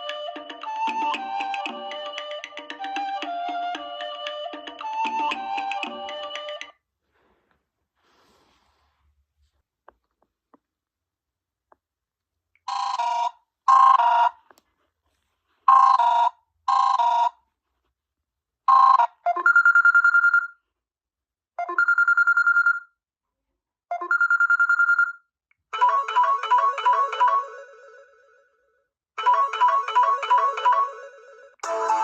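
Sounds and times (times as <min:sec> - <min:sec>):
mobile phone ringtones: 0:18.7 - 0:20.6, 0:21.6 - 0:23.0, 0:23.9 - 0:25.2, 0:25.8 - 0:28.2, 0:29.2 - 0:32.0.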